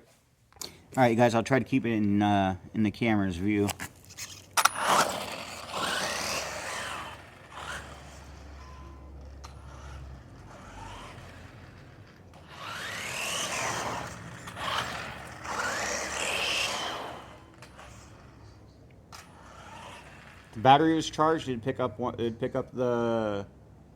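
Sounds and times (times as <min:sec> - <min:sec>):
tyres scraping over ground: 0:03.4 - 0:21.4
toy car electric motor whining: 0:04.0 - 0:21.3.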